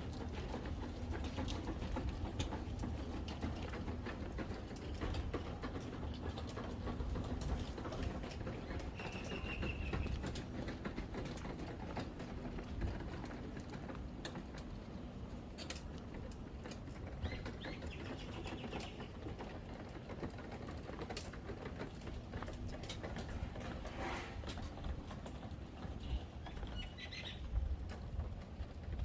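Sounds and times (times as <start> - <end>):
bird call: 9.0 - 10.1.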